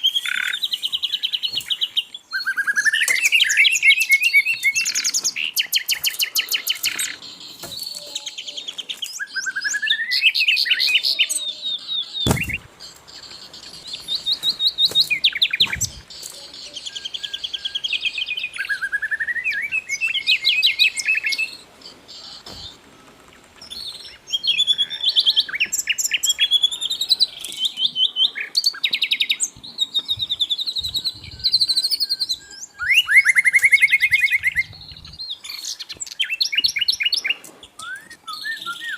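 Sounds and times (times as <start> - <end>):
bird singing chirping trills: 0.0 - 38.9
low thump: 12.3 - 12.7.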